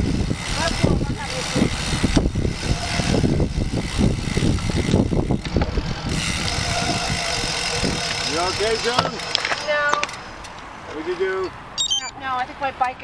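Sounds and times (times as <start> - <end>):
wind buffeting microphone: 0.0 - 8.8.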